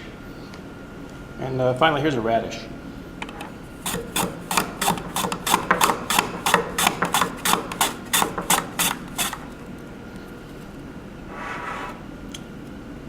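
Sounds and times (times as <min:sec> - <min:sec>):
mandoline slicing radish: 0:03.8 - 0:09.7.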